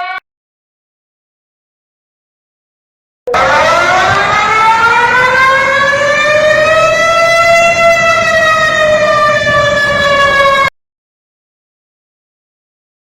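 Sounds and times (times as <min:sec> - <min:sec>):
warning siren wailing: 0:00.0 - 0:00.2, 0:03.3 - 0:10.7.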